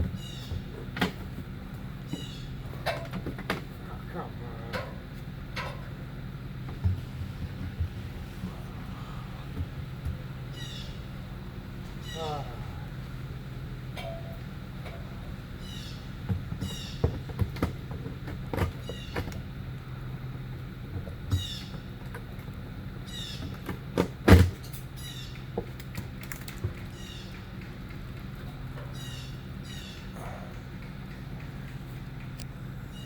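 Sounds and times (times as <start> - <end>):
birds chirping: 0.0 - 2.9, 8.1 - 24.0, 24.7 - 33.0
machine hum: 0.0 - 33.0
knocks and thumps: 6.6 - 8.1, 16.2 - 19.4.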